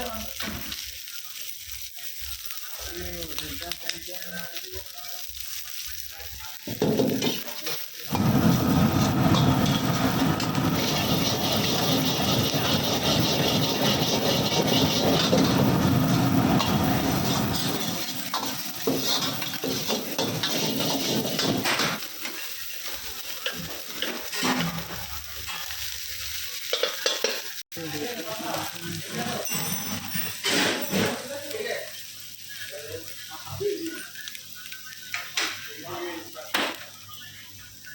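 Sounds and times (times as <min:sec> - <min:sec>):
food sizzling in a hot pan: 0:00.0 - 0:37.9.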